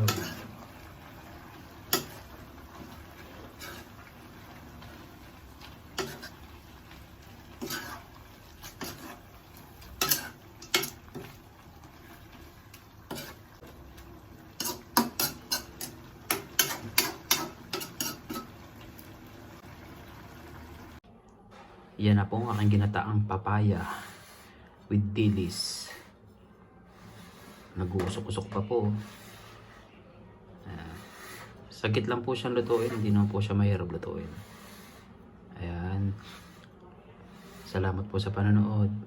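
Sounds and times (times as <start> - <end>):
metal utensil scraping a pot: 0.0 - 12.4, 13.0 - 13.7, 14.5 - 18.7, 32.6 - 33.3.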